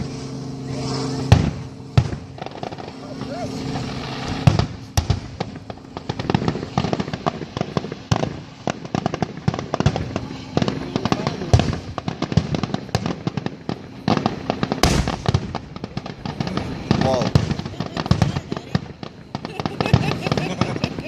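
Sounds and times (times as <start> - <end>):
big fireworks boom: 1.2 - 21.0
fireworks crackling bangs and pops: 1.3 - 21.0.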